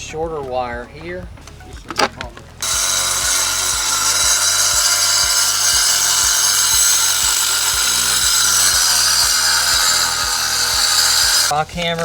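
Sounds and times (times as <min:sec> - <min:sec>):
harsh hissing: 0:02.6 - 0:12.0.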